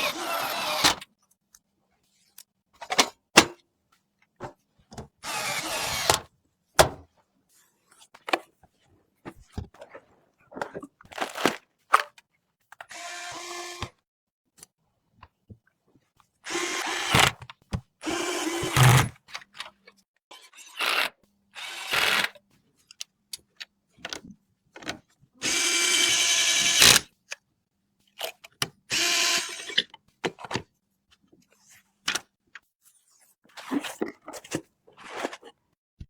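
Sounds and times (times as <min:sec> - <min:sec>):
electric screwdriver driving screws: 0:00.0 - 0:01.0, 0:05.2 - 0:06.2, 0:12.9 - 0:13.9, 0:16.5 - 0:17.4, 0:18.0 - 0:19.1, 0:20.8 - 0:22.3, 0:25.4 - 0:27.1, 0:28.9 - 0:29.8.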